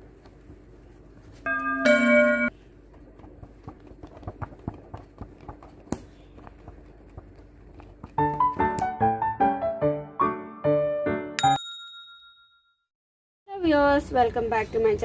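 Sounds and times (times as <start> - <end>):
two-note chime: 1.5 - 2.5.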